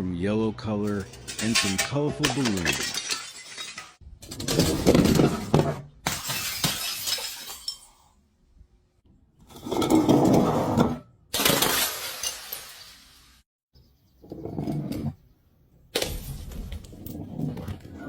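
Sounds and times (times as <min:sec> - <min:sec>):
glass shards clinking: 0:00.9 - 0:04.0, 0:06.1 - 0:08.1, 0:11.4 - 0:13.0
glass bottles shattering: 0:00.9 - 0:08.2, 0:11.4 - 0:13.2.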